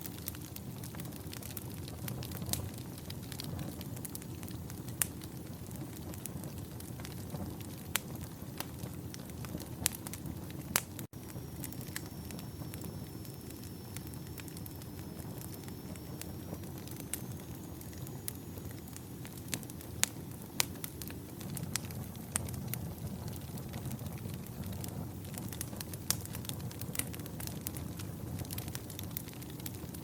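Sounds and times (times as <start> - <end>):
firewood crackling and popping: 0.0 - 30.0
campfire flame rushing: 0.1 - 30.0
faint high whistle: 11.2 - 19.4.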